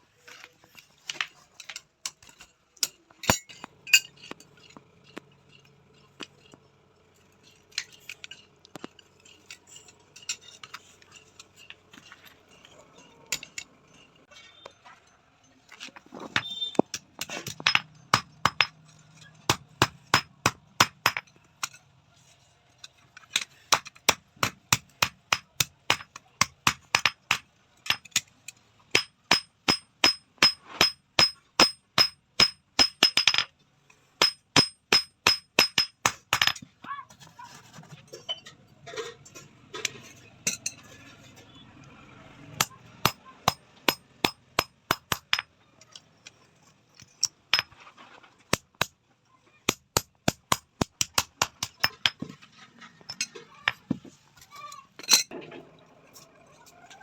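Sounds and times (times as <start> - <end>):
hammer striking steel on anvil: 29.0 - 33.5, 34.2 - 36.6, 42.6 - 45.4.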